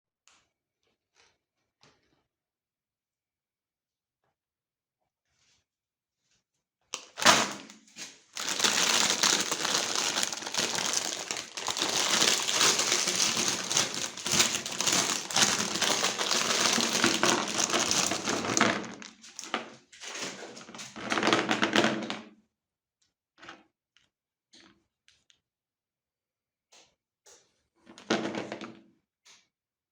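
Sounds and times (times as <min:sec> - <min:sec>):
meat grinder crunching candy: 0:07.0 - 0:07.6, 0:08.4 - 0:19.6.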